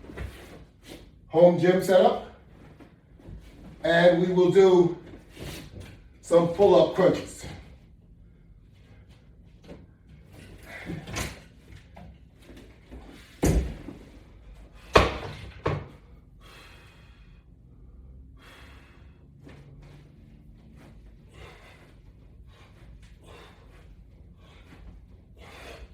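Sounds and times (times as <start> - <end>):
exercise equipment knocks and thuds: 12.5 - 14.1, 14.8 - 16.0.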